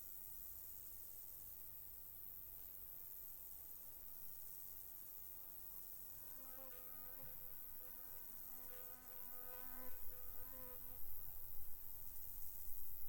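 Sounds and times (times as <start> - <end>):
flying insect buzzing: 5.3 - 12.9.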